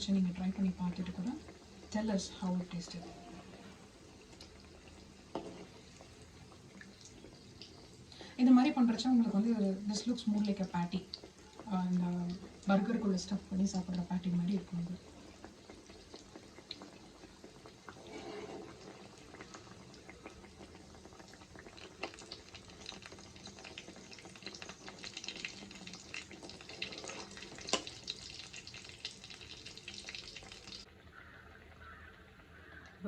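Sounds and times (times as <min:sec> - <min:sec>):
food frying in oil: 0:00.0 - 0:33.0.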